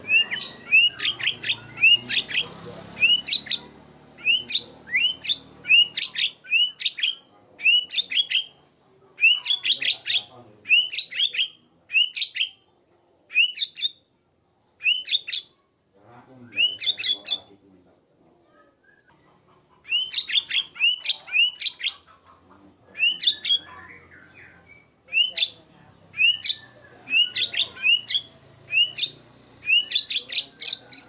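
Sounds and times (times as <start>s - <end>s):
bird singing whistled phrases: 0.0s - 3.6s, 4.2s - 8.5s, 9.2s - 12.6s, 13.3s - 14.0s, 14.8s - 15.5s, 16.5s - 17.5s, 19.9s - 21.9s, 23.0s - 31.0s.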